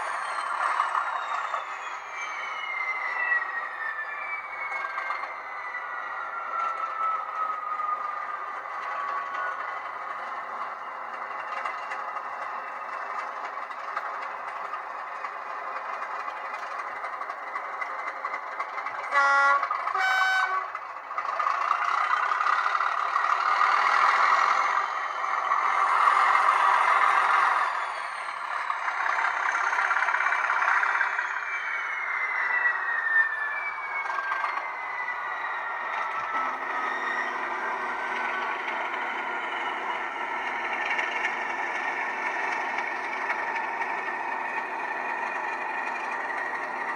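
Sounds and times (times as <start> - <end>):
diesel engine idling: 0.0 - 46.9
engine powering up with whistle: 0.0 - 46.9
two-tone horn: 19.0 - 20.8.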